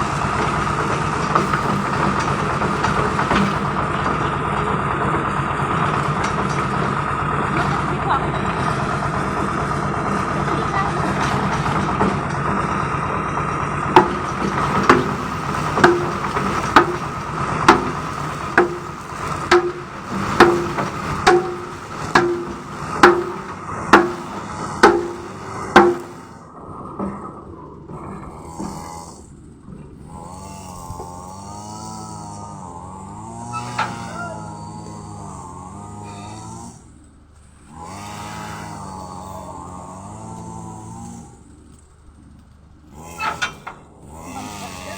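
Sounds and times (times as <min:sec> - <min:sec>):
concrete mixer engine running: 0:00.0 - 0:44.9
sharp ringing knocks: 0:14.0 - 0:26.4, 0:33.5 - 0:34.7.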